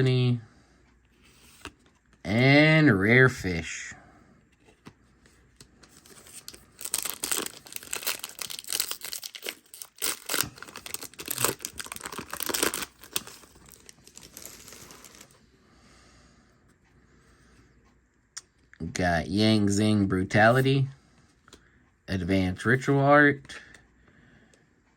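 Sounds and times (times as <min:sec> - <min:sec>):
foil wrapper tearing and crinkling: 0:06.1 - 0:15.4.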